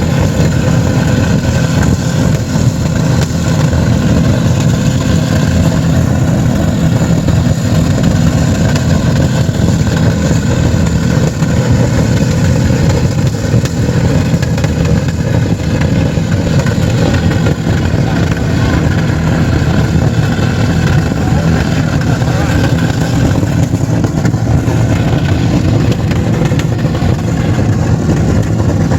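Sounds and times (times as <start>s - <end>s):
car engines revving high: 0.0s - 28.9s.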